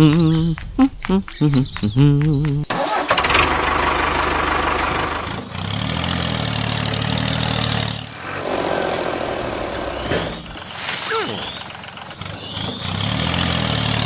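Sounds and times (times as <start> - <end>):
small engine running: 2.9 - 14.0.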